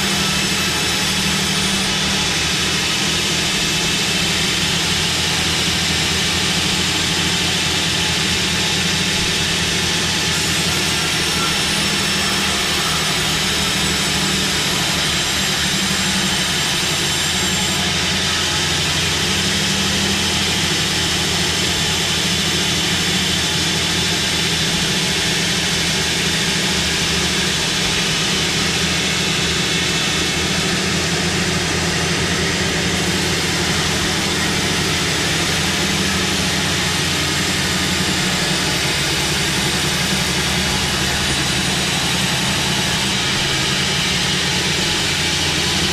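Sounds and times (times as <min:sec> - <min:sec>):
sawmill saw droning: 0:00.0 - 0:45.9.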